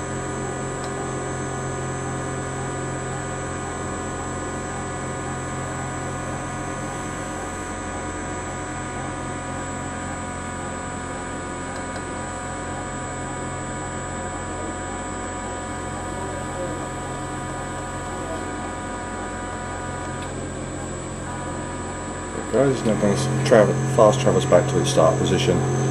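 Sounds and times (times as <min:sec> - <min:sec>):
milling machine cutting metal: 0:21.6 - 0:25.9.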